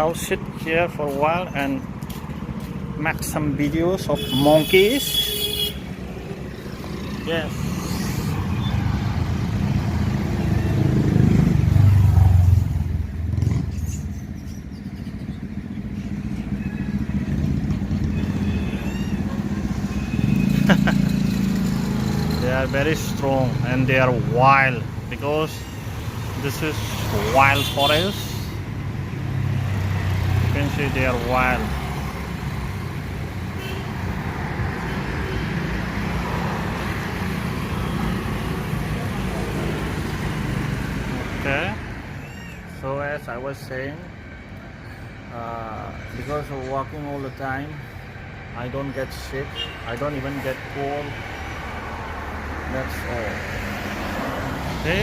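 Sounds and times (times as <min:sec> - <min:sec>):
road traffic rumble: 0:00.0 - 0:55.0
vehicle engine passing: 0:15.8 - 0:25.2.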